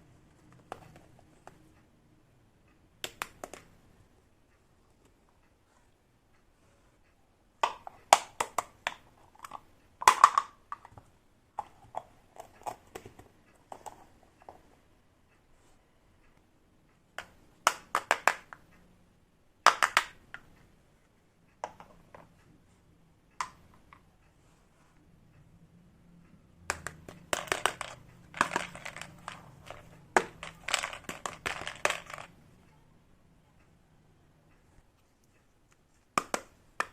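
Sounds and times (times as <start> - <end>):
toy pieces clicking and clattering: 7.6 - 11.0, 17.2 - 18.6, 26.7 - 32.4.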